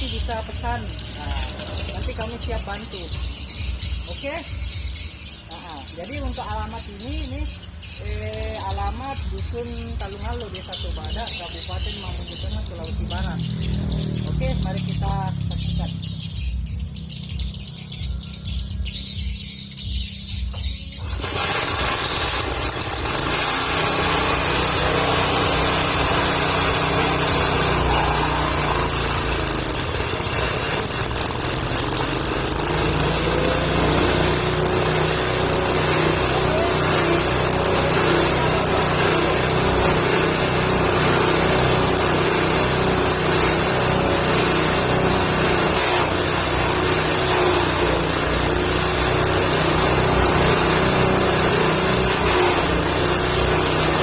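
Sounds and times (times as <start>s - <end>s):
forage chopper running: 0.0s - 17.9s, 19.0s - 54.0s
engine hum: 0.0s - 54.0s.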